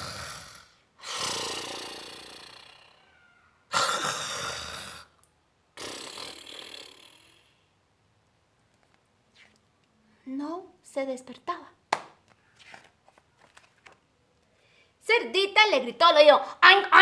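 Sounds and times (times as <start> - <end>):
dog snoring: 0.0 - 3.1.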